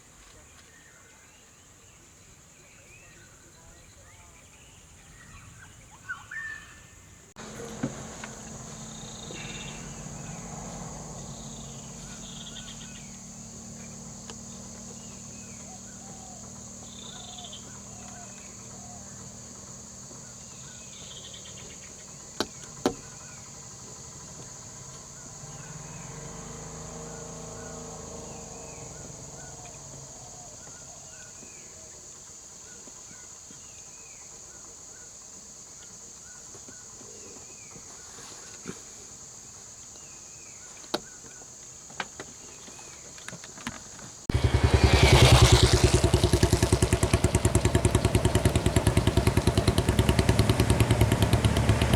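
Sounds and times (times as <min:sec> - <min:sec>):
bird chirps: 0:01.4 - 0:19.4, 0:20.1 - 0:26.2
low engine hum: 0:07.4 - 0:30.9, 0:44.3 - 0:51.9.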